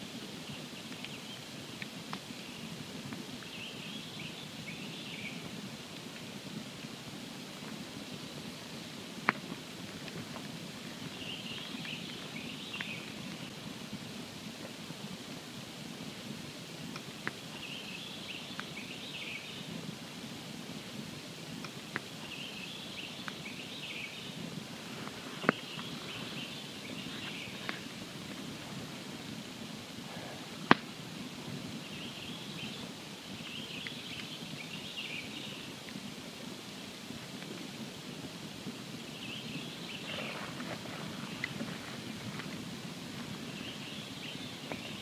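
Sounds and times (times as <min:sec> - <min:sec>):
campfire crackling and popping: 0:00.0 - 0:45.0.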